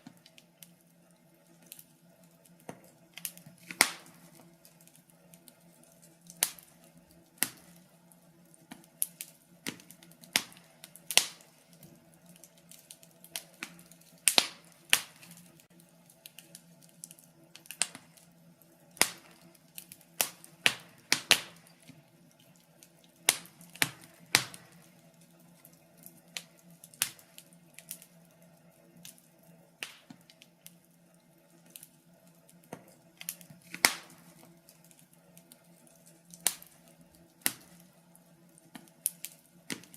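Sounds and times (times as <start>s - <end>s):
wood fire crackling: 0.0s - 39.9s.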